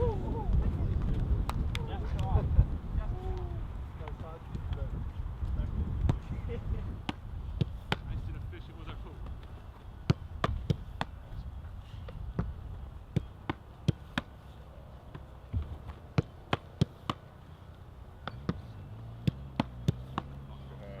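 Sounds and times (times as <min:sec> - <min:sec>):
wind rumble on microphone: 0:00.0 - 0:13.1
footballs being kicked: 0:05.4 - 0:11.4, 0:12.0 - 0:17.3, 0:18.2 - 0:20.5.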